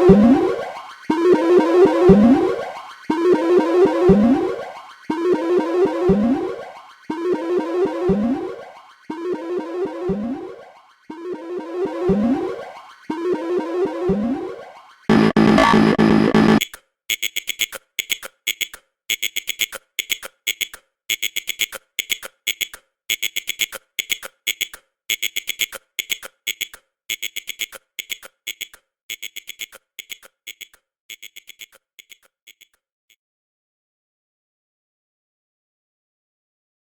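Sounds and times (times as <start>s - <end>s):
electronic alarm beeping: 15.1s - 16.6s, 24.5s - 32.6s.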